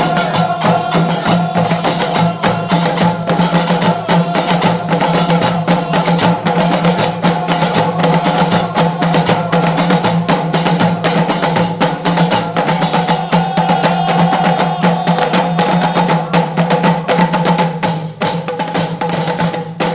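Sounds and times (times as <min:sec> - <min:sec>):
music with fast percussion beat: 0:00.0 - 0:19.9.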